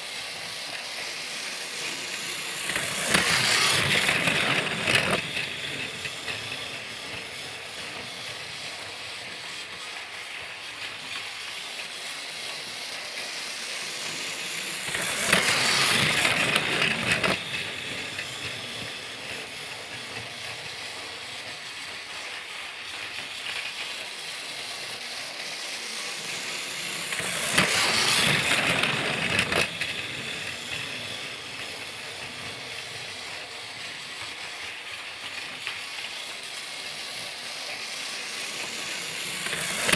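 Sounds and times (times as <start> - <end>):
toy train whirring and rattling: 0.0 - 39.9.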